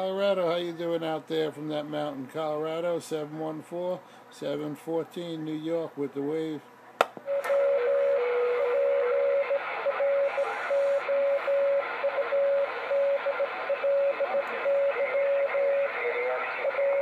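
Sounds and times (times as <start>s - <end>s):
lower steady tone: 7.3s - 17.0s
morse code tone: 7.3s - 17.0s
radio band noise hiss: 7.5s - 17.0s.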